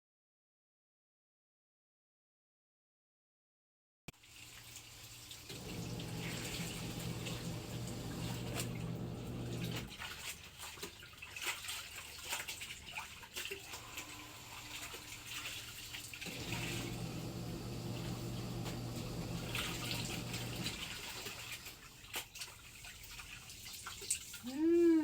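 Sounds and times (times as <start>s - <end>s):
tap water running into basin: 4.1s - 24.6s
wet clothes splashing and sloshing: 4.2s - 17.1s, 18.7s - 25.0s.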